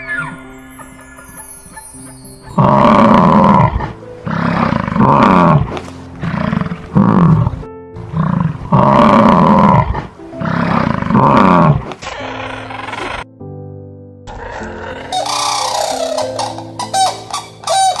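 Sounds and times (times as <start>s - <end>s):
big cat roaring: 2.6s - 13.2s, 14.3s - 16.3s.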